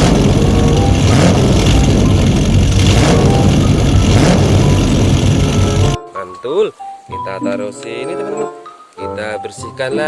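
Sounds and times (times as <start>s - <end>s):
car engine revving: 0.0s - 6.0s.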